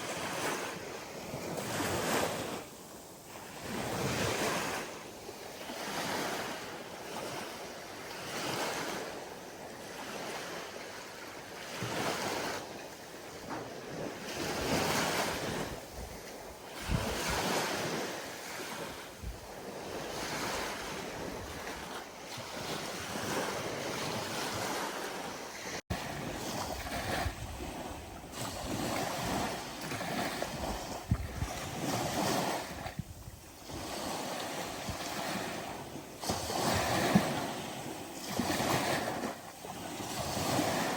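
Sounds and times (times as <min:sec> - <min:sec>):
ocean waves breaking: 0:00.0 - 0:40.9
wind rumble on microphone: 0:00.0 - 0:40.9.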